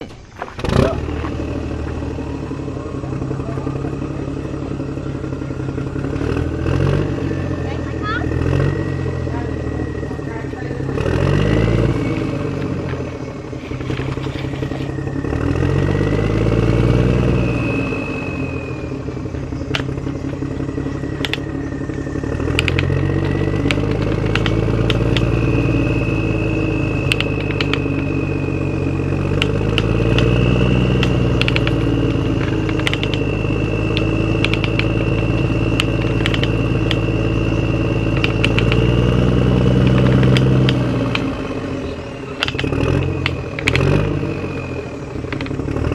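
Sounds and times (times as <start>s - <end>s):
high motor whine: 0.0s - 45.9s
low engine-like drone: 0.0s - 45.9s
sharp clicks: 19.7s - 20.4s, 21.1s - 25.4s, 27.0s - 28.1s, 29.3s - 37.1s, 38.1s - 39.1s, 39.7s - 41.3s, 42.4s - 44.0s, 45.2s - 45.6s.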